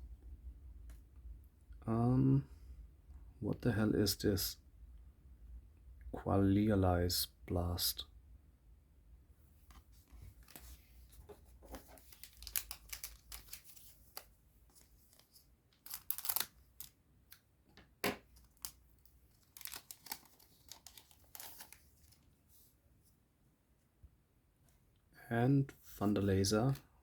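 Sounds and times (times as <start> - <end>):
cards rustling: 9.7 - 17.0, 18.3 - 22.3
foil wrapper crinkling and tearing: 11.8 - 17.0, 18.4 - 22.2.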